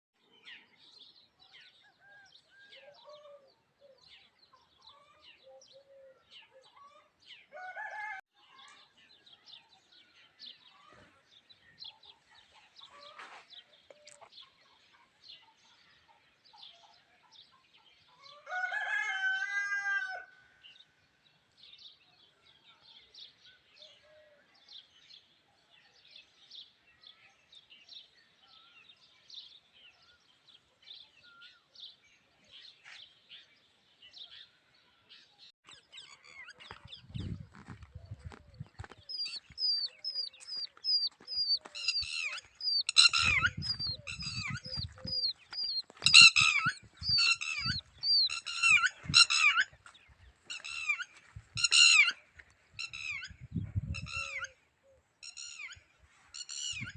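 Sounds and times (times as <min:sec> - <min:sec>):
rooster crowing: 0:07.5 - 0:08.2, 0:18.3 - 0:20.4
small birds chirping: 0:21.7 - 0:56.9.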